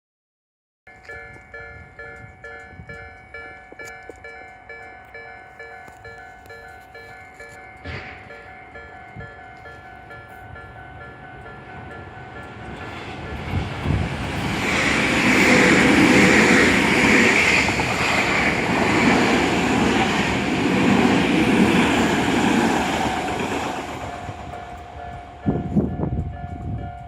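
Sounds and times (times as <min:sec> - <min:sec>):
crossing warning bell: 0:00.9 - 0:27.0
train wheels rumbling on rails: 0:07.4 - 0:27.0.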